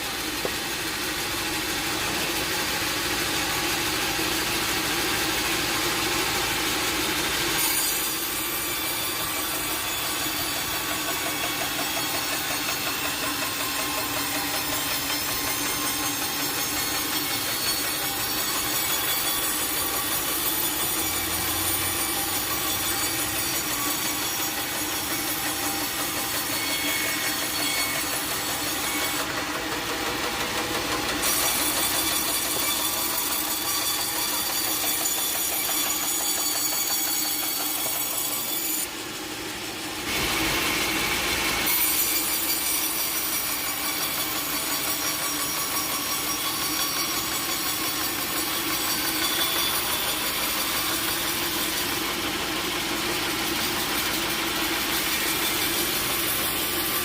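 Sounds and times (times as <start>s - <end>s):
saw cutting through log: 0.0s - 57.0s.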